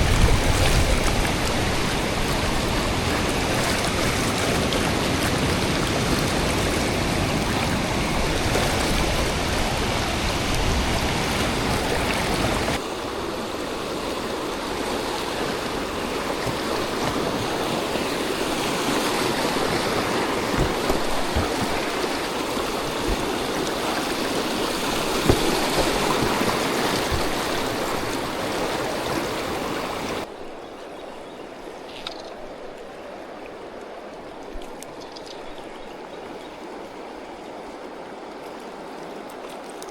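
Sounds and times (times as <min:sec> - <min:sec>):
river water rushing over riffles: 0:00.0 - 0:30.6.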